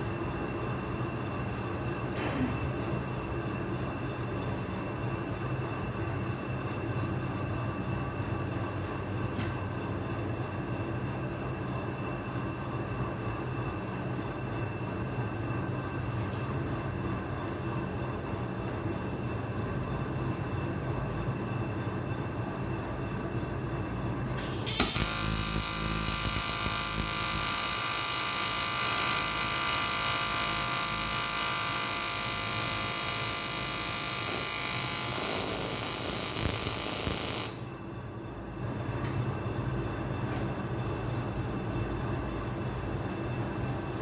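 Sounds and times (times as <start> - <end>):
welding arc buzzing hum: 24.4 - 37.7.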